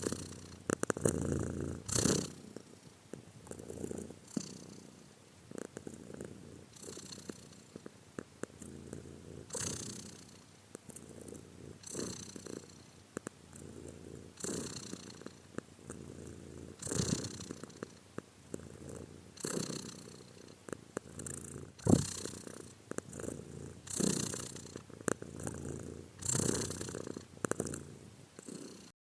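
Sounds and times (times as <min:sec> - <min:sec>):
cat purring: 0:00.0 - 0:28.9.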